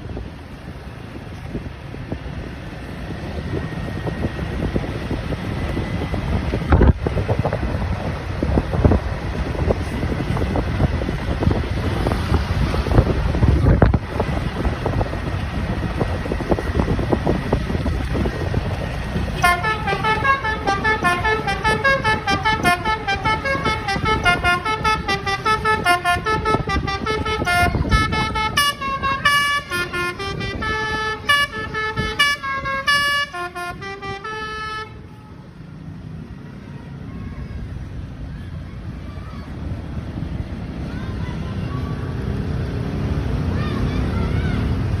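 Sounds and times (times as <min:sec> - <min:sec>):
engine rumble: 0:00.0 - 0:45.0
wind rumble: 0:00.0 - 0:45.0
bus horn playing a tune: 0:19.3 - 0:35.1.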